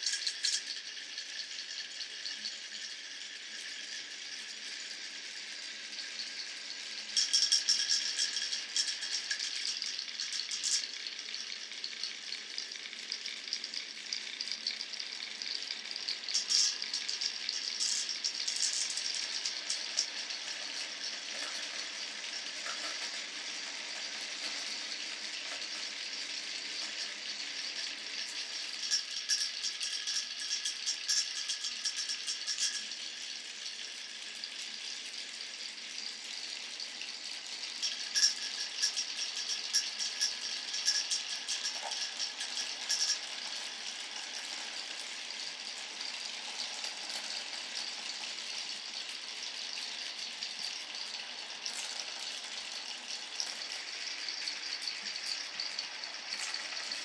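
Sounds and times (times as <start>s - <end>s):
marbles rolling on wooden track: 0.0s - 0.9s, 7.2s - 11.5s, 16.2s - 33.0s, 37.4s - 57.0s
marbles clicking and clattering: 16.3s - 26.0s, 37.8s - 57.0s.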